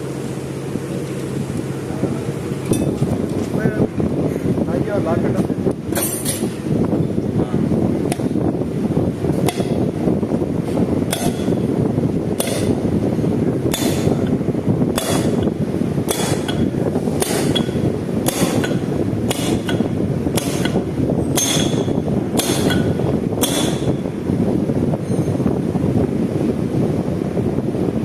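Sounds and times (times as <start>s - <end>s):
hammer striking metal: 9.4s - 9.8s, 11.1s - 11.6s, 12.4s - 12.8s, 13.7s - 14.3s, 15.0s - 15.5s, 16.1s - 24.0s.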